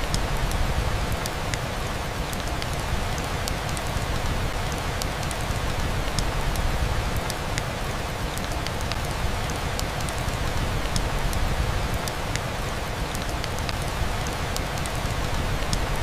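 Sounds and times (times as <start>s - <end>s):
soft steady rain: 0.0s - 16.0s.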